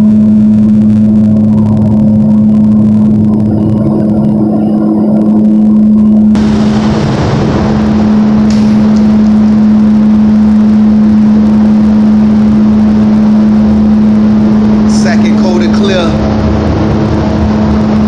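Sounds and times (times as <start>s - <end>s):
machine drone: 0.0s - 18.0s
rushing hiss: 6.4s - 9.3s.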